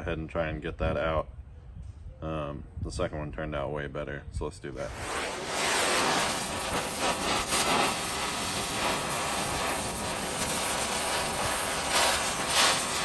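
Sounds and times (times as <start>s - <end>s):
gas torch hissing: 4.8s - 13.0s.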